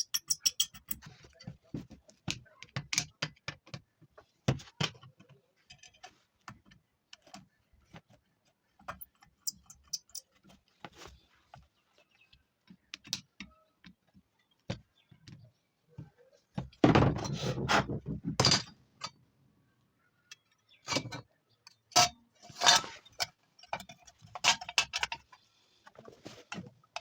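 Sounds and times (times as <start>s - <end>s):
tools and metal parts clinking: 0.0s - 1.2s, 5.6s - 6.2s, 8.9s - 10.5s, 21.9s - 25.4s.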